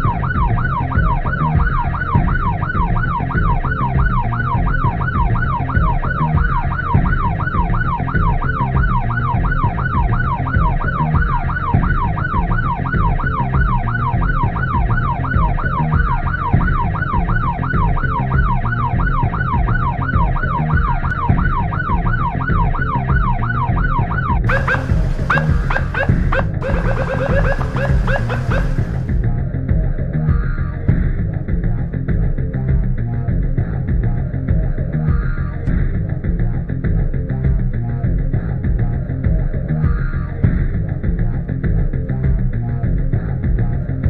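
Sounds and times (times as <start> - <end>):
siren yelping: 0.0 - 29.2
road and engine rumble: 24.4 - 29.3.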